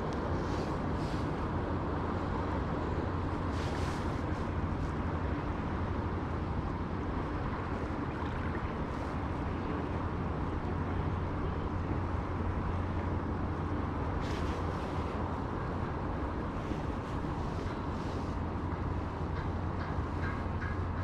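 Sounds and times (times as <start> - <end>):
moving water: 0.0 - 21.0.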